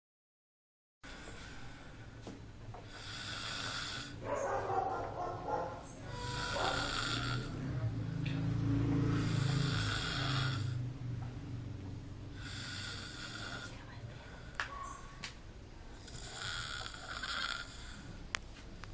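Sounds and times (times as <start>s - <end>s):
person snoring: 1.1s - 2.1s, 2.9s - 4.2s, 6.1s - 7.9s, 9.0s - 10.9s, 12.3s - 13.8s, 16.0s - 18.2s.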